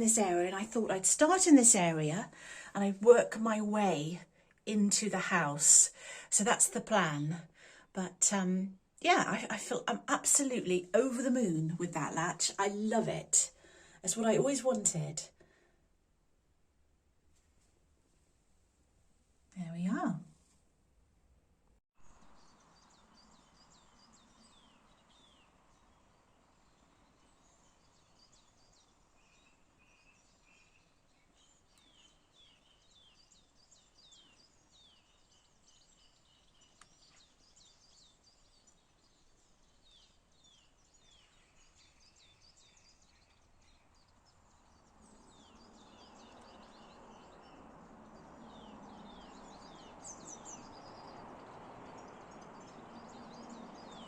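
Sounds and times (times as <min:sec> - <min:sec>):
small birds chirping: 0:00.0 - 0:15.6, 0:22.0 - 0:54.0
faint background noise: 0:00.0 - 0:54.0.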